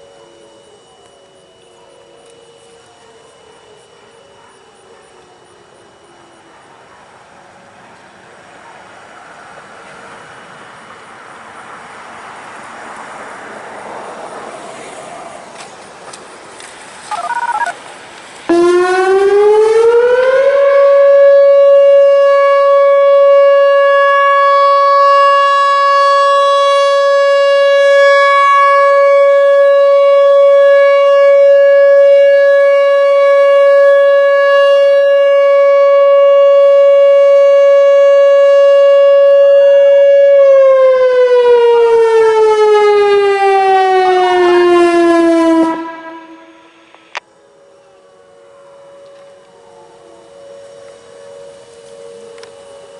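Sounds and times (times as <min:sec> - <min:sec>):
electronic warning siren: 0:17.0 - 0:17.9, 0:18.5 - 0:52.9.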